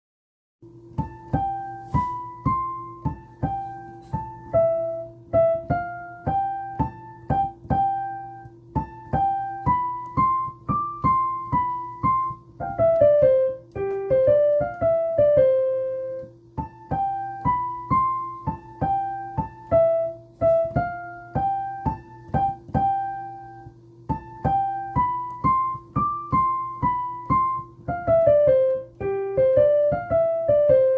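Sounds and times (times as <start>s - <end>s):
piano melody: 0.6s - 30.9s
steady low hum: 0.7s - 30.9s.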